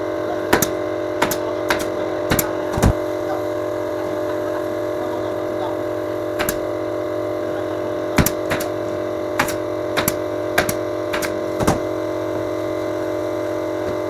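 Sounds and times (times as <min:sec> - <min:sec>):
steady hum: 0:00.0 - 0:14.0
staple gun firing: 0:00.5 - 0:03.0, 0:06.4 - 0:06.7, 0:08.2 - 0:08.8, 0:09.4 - 0:11.9.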